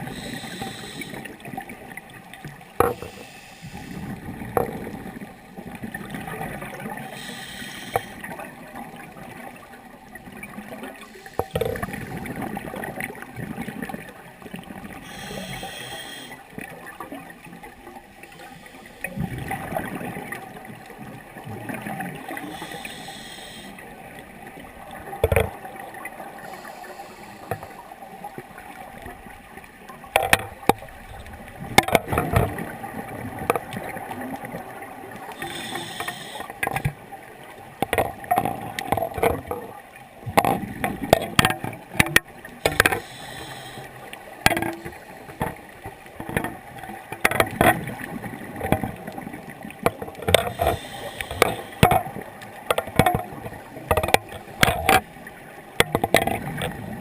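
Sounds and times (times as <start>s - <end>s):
hissing regulator inhale: 0.0s - 1.4s, 2.8s - 4.2s, 7.1s - 8.2s, 11.0s - 12.1s, 15.0s - 16.4s, 18.2s - 19.2s, 22.4s - 23.8s, 26.4s - 27.9s, 35.4s - 36.9s, 42.6s - 44.1s, 50.4s - 51.8s
exhaled bubbles gurgling: 0.0s - 29.1s.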